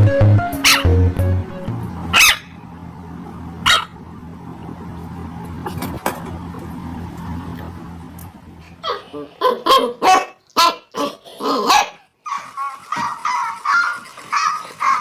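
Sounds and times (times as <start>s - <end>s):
puppy barking: 0.6s - 1.0s, 2.1s - 2.6s, 3.6s - 4.0s, 8.8s - 15.0s.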